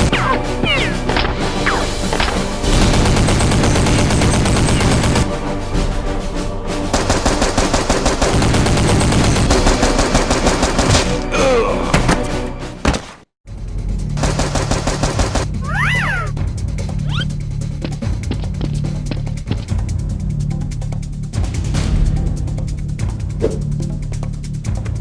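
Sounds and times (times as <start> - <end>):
background music: 0.0 - 25.0
automatic gunfire: 2.7 - 5.3, 6.9 - 11.1, 14.2 - 15.5.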